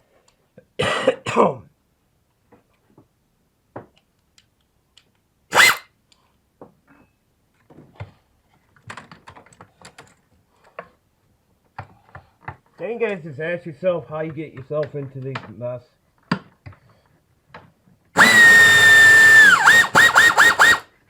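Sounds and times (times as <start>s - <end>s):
hand tools clicking and knocking: 5.5s - 5.8s, 18.2s - 20.8s.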